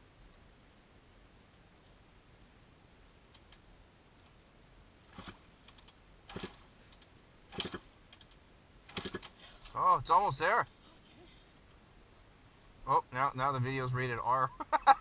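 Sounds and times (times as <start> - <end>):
dirt bike kick-start: 6.3 - 6.6, 7.5 - 7.9, 8.9 - 9.4.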